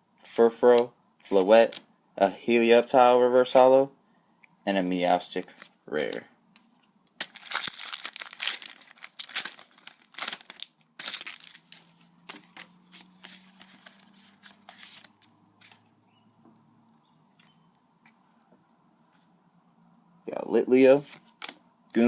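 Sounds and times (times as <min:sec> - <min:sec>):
foil wrapper tearing and crinkling: 0:07.2 - 0:14.1.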